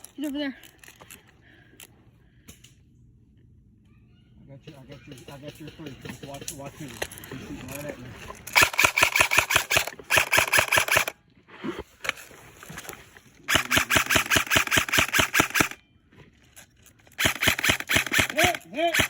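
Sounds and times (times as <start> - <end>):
airsoft rifle firing bursts: 8.5 - 11.1, 13.5 - 15.8, 17.2 - 19.0.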